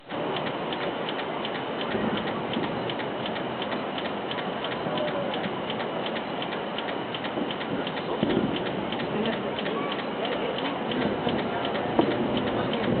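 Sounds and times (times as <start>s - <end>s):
high-pitched ticking: 0.0s - 13.0s
steady background noise: 0.0s - 13.0s.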